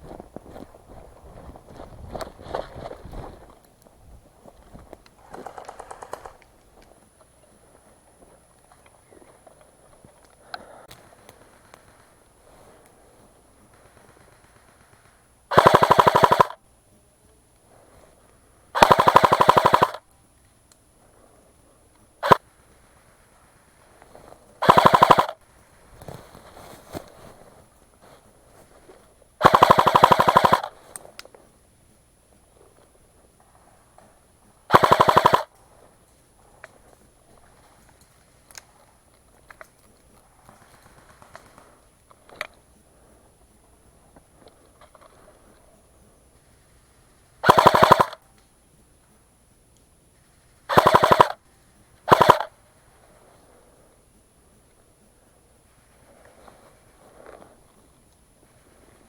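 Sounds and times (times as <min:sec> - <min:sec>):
faint clicks and rustling: 0:00.0 - 0:59.0
airsoft gun full-auto bursts: 0:13.6 - 0:16.6, 0:18.8 - 0:20.0, 0:22.2 - 0:22.4, 0:24.6 - 0:25.4, 0:29.4 - 0:30.8, 0:34.7 - 0:35.5, 0:47.4 - 0:48.2, 0:50.7 - 0:51.4, 0:52.1 - 0:52.6.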